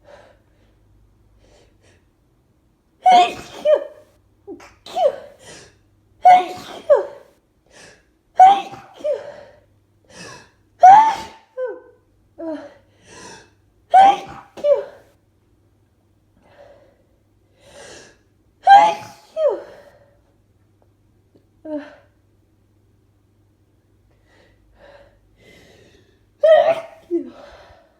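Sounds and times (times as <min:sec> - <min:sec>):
person sneezing: 0:03.0 - 0:07.3, 0:08.4 - 0:11.6, 0:13.2 - 0:15.1, 0:18.7 - 0:19.9, 0:26.5 - 0:27.5.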